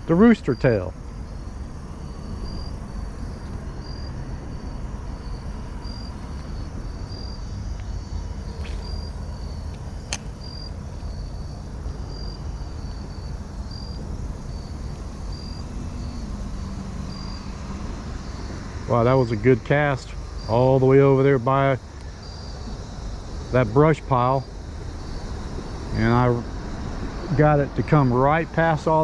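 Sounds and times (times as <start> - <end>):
steady low rumble: 0.0 - 17.3
insects chirping: 0.0 - 29.0.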